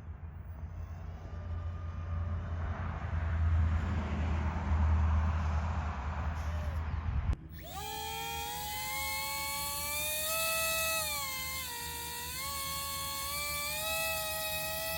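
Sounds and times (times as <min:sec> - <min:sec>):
model plane motor whining: 0:07.5 - 0:14.9.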